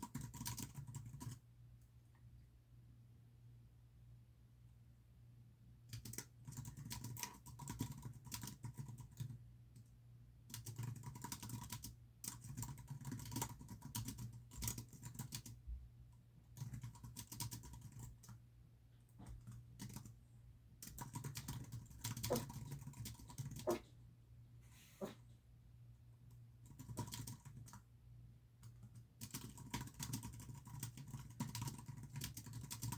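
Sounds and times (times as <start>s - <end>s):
typing on computer keyboard: 0.0s - 1.4s, 5.9s - 15.6s, 16.5s - 18.4s, 19.3s - 20.2s, 20.8s - 23.8s, 26.3s - 27.9s, 28.6s - 32.9s.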